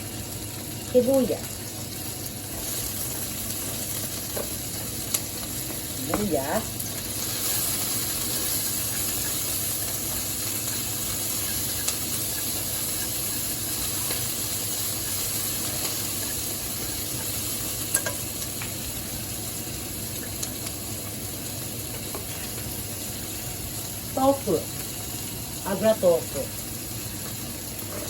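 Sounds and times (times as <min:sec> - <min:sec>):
onion sizzling in hot oil: 0:00.0 - 0:28.0
sharp clicks against pan: 0:17.9 - 0:18.8.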